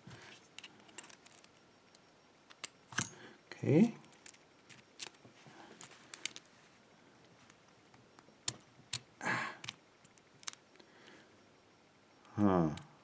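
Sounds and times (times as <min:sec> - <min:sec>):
small metal clicks and taps: 0:08.2 - 0:10.6.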